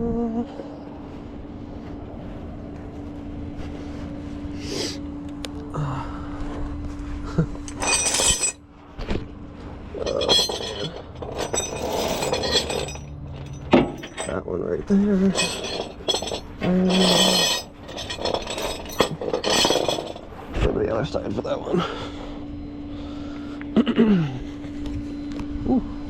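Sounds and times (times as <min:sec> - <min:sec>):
steady hum: 0:00.0 - 0:26.0
metal chains clinking and rattling: 0:07.7 - 0:08.6, 0:10.0 - 0:14.4, 0:15.2 - 0:20.5.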